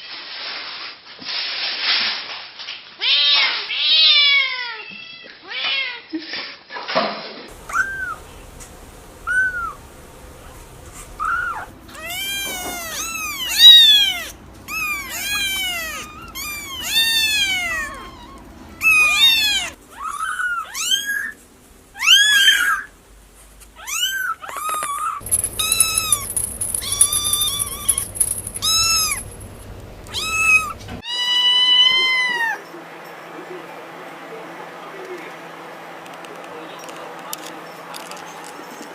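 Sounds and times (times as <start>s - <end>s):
kittens meowing: 7.5s - 21.4s, 23.8s - 31.3s.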